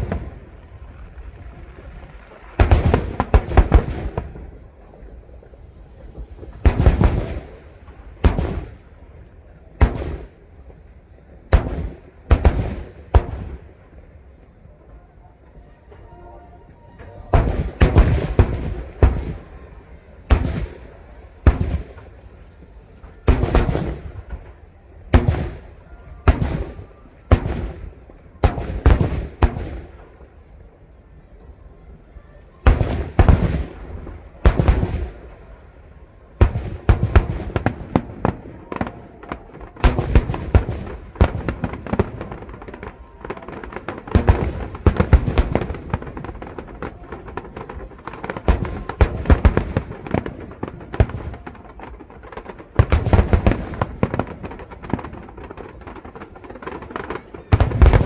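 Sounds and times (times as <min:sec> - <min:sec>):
firework shells bursting: 0:00.0 - 0:09.2, 0:15.5 - 0:30.1, 0:32.6 - 0:35.7, 0:36.4 - 0:56.3
small crackling bursts: 0:00.0 - 0:58.0.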